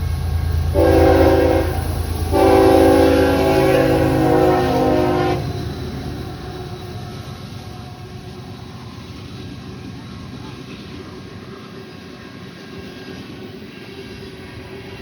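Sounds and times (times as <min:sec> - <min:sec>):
locomotive engine rumble: 0:00.0 - 0:15.0
locomotive air horn chord: 0:00.7 - 0:05.6.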